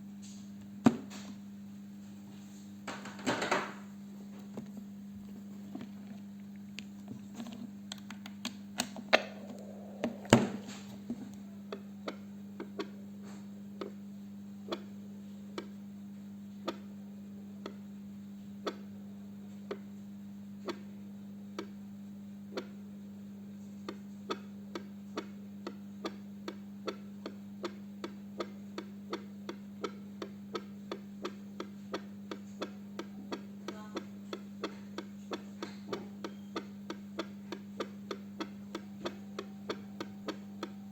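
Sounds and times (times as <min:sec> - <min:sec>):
steady low hum: 0:00.0 - 0:40.9
doppler loudspeaker clicks: 0:08.1 - 0:11.5.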